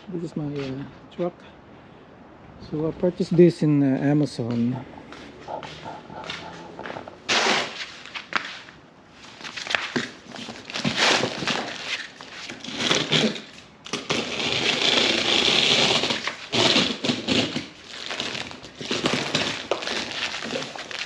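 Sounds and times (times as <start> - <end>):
cardboard and plastic packaging crinkling: 9.2 - 21.0.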